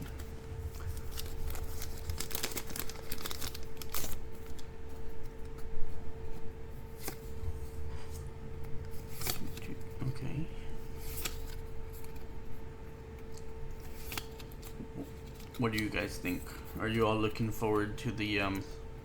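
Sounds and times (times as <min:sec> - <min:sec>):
faint steady hum: 0:00.0 - 0:19.0
foil wrapper crinkling and tearing: 0:00.1 - 0:05.6.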